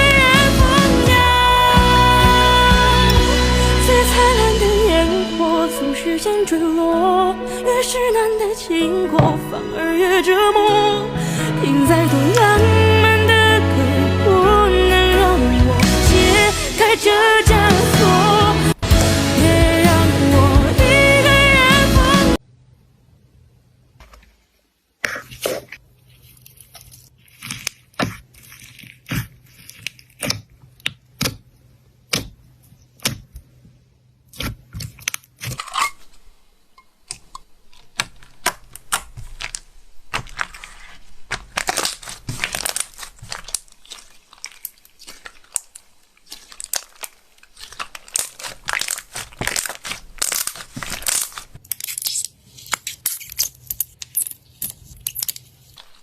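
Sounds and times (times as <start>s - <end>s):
slime squeezed with sticky pops: 26.6s - 33.4s, 37.1s - 55.7s.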